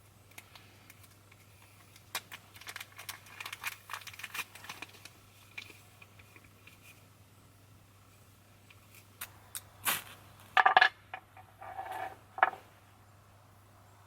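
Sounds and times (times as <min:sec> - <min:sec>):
crinkling and clicking handling: 0:00.0 - 0:07.1.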